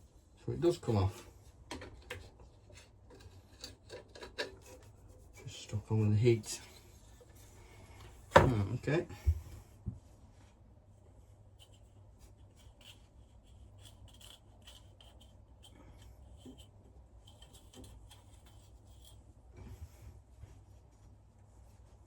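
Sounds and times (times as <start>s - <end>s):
low steady hum: 0.0s - 22.0s
faint scratches and ticks: 11.5s - 19.4s.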